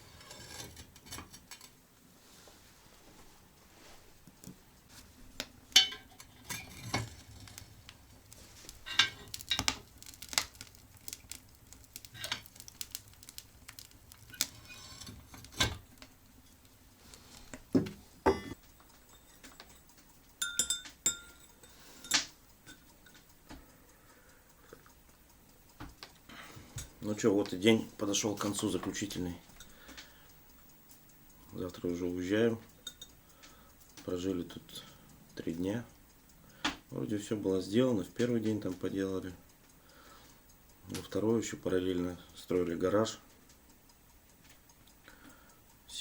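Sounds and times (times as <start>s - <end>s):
dishes and cutlery clinking: 4.4s - 22.8s.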